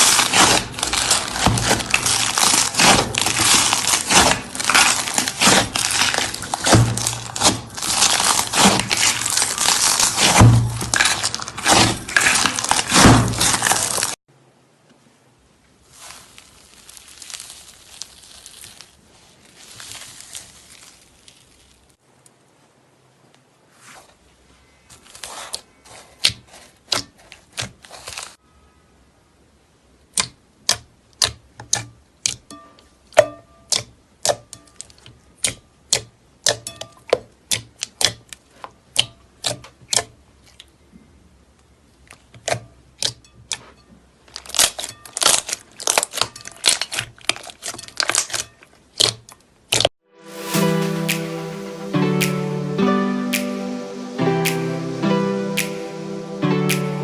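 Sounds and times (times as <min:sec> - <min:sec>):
slime clicking and popping: 0:30.1 - 0:32.5, 0:33.1 - 0:40.1.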